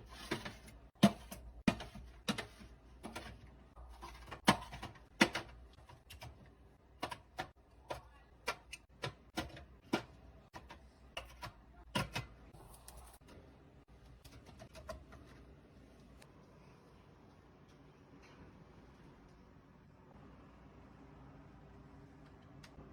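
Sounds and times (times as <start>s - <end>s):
containers clicking on fridge shelves: 0.1s - 12.5s.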